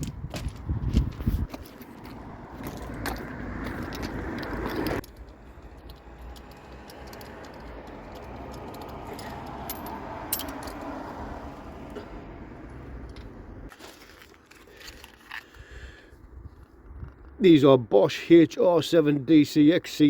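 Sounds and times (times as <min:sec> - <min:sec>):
metallic clinks of tools: 0:05.0 - 0:10.9.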